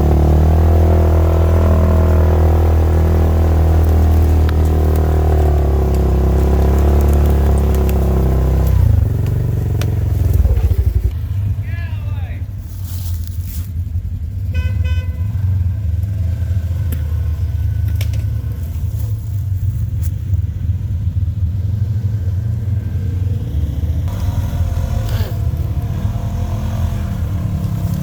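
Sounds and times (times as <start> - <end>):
vehicle engine rumbling: 0.0 - 28.0
knocks and clatters: 3.8 - 11.2.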